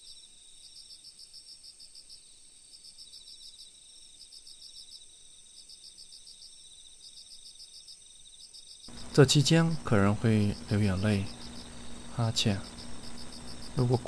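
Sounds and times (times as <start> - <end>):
crickets chirping: 0.0 - 14.0
steady high-pitched tone: 8.9 - 14.0.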